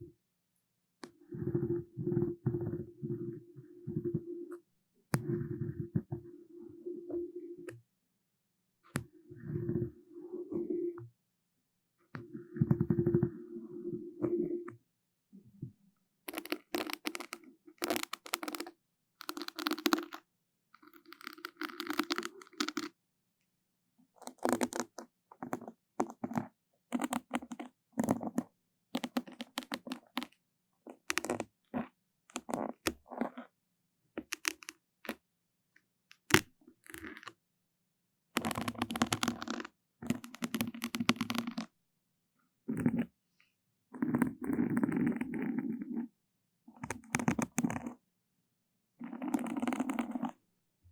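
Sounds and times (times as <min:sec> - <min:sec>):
crackling and rubbing bursts: 0:16.3 - 0:20.2, 0:24.2 - 0:33.5, 0:38.4 - 0:41.7, 0:46.8 - 0:48.0, 0:49.0 - 0:50.4.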